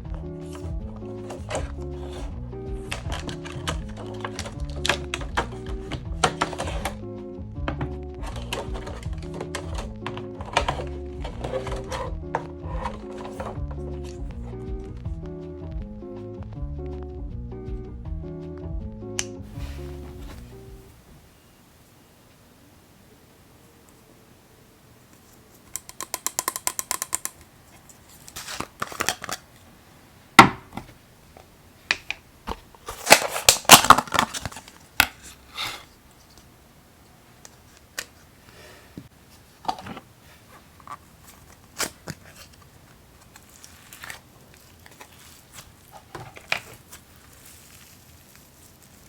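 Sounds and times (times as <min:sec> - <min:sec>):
slime clicking and crackling: 0:43.3 - 0:49.0.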